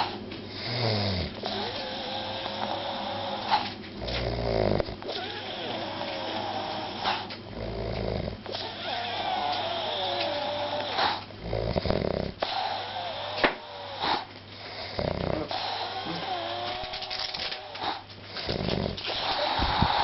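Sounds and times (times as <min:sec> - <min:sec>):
snoring: 0:00.0 - 0:20.0.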